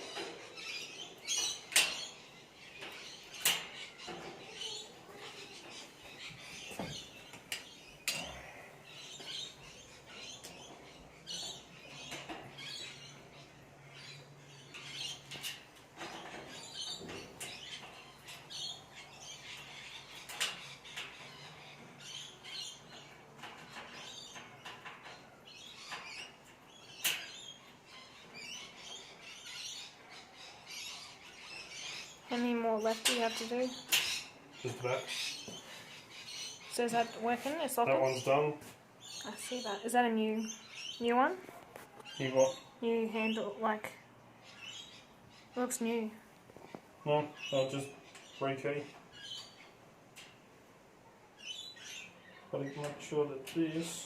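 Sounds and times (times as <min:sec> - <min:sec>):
small birds chirping: 0:00.0 - 0:54.0.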